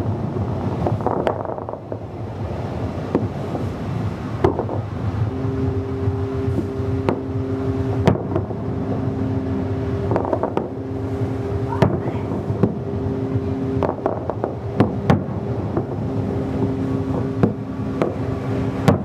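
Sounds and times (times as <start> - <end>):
low rumble: 0.0 - 19.0
fireworks cracking and popping: 0.7 - 2.1, 10.1 - 10.8, 13.8 - 16.2, 17.1 - 19.0
ship whistles blasting: 3.4 - 19.0.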